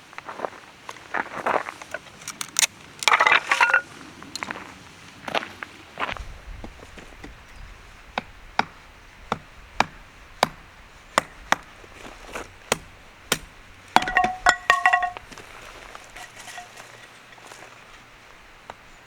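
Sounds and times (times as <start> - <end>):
ringing clinks: 14.0 - 15.4, 16.1 - 17.0.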